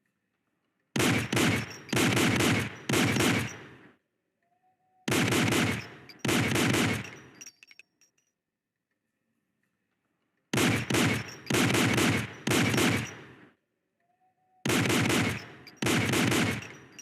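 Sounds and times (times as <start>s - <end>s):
pistol shots: 1.0s - 3.9s, 5.1s - 7.5s, 10.6s - 13.5s, 14.7s - 17.0s.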